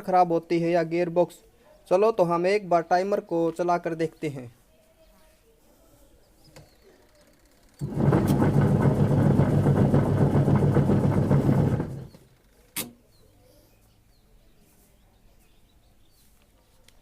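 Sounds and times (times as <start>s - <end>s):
washing machine motor humming: 7.8s - 12.2s
sharp click: 12.7s - 13.0s.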